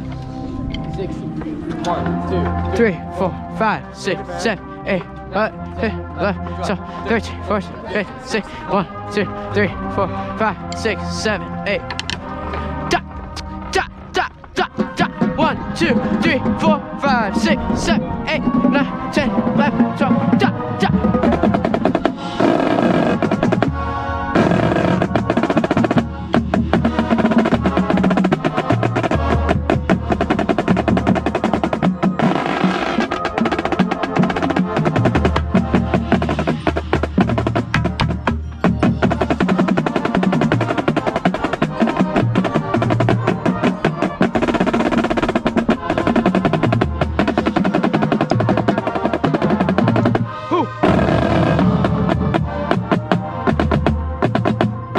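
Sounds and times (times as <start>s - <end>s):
bass drum notes: 0.0s - 31.9s
snare drum strokes and rolls: 13.7s - 54.9s.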